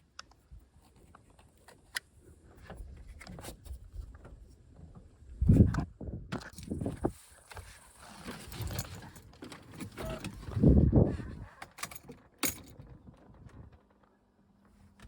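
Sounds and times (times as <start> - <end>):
tools clinking and knocking: 11.7 - 12.8.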